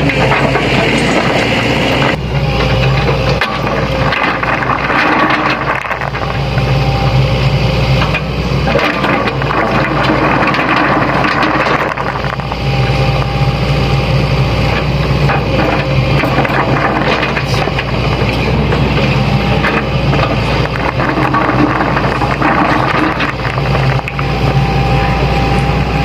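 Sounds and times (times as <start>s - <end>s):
excavator diesel engine: 0.0s - 26.0s
bucket knocking and scraping stones: 19.6s - 23.9s.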